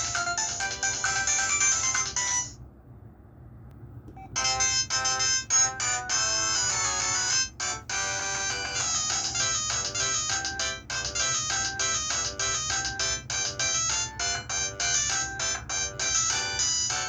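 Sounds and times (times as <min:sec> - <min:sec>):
electronic phone ringtone melodies: 0:00.0 - 0:02.6, 0:04.2 - 0:17.0.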